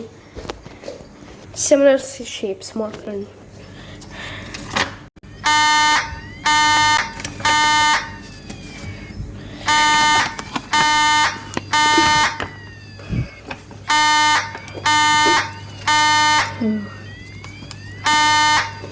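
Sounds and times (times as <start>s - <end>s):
fire alarm horn blasts: 5.2s - 8.4s, 9.1s - 12.4s, 13.8s - 17.2s, 17.8s - 18.9s.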